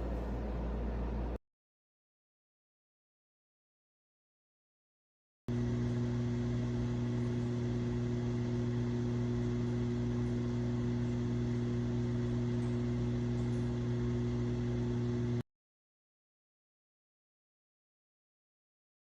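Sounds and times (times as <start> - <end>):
fan hiss: 0.0 - 1.4
microwave oven humming: 0.0 - 1.4, 5.5 - 15.4.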